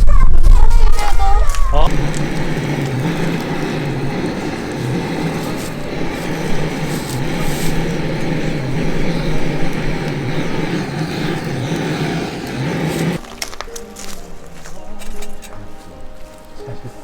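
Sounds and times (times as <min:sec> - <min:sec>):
steady mechanical drone: 0:01.6 - 0:13.2.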